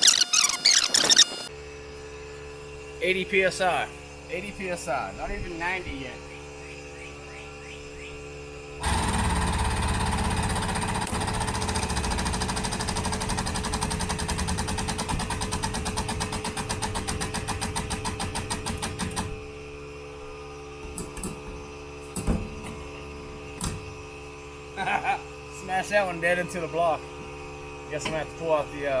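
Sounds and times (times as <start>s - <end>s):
hydraulic pump chattering: 0.0s - 1.5s, 8.8s - 19.6s.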